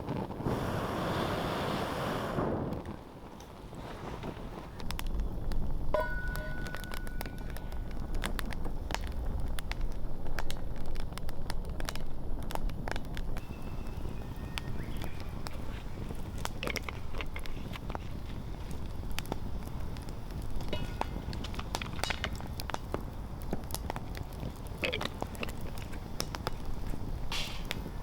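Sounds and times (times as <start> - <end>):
campfire crackling and popping: 0.0 - 28.0
thin high tone: 6.0 - 7.8.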